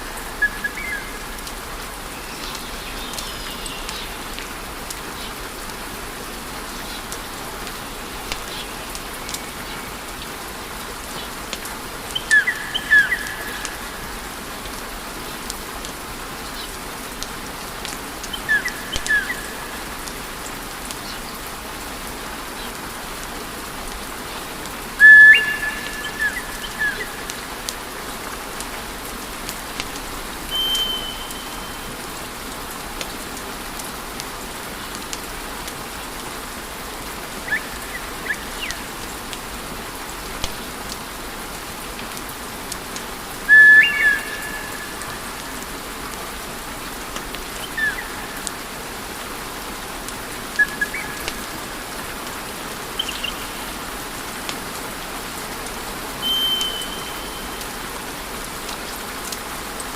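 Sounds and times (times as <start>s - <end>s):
brief whistling tones: 56.2s - 57.4s.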